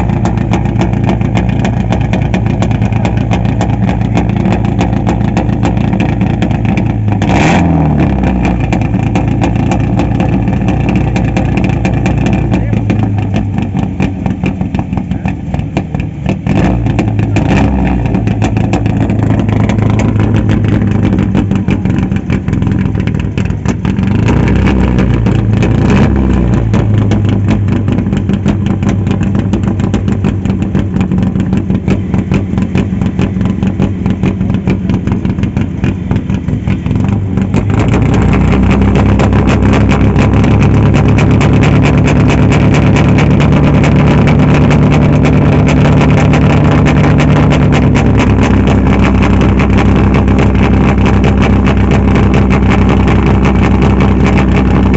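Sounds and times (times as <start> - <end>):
rally car engine idling and revving: 0.0 - 54.9.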